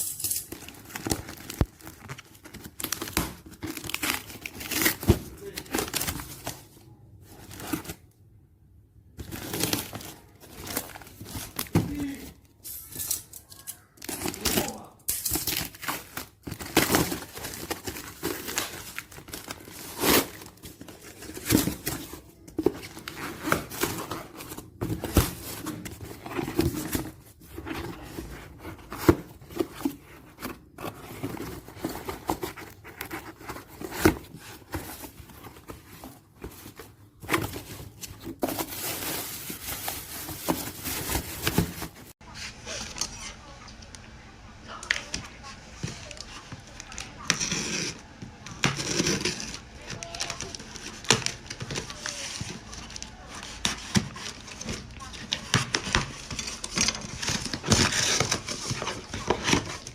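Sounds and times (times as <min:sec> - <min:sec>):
packaging crinkling and tearing: 0:00.5 - 0:08.1, 0:09.2 - 0:12.2, 0:12.9 - 0:42.2.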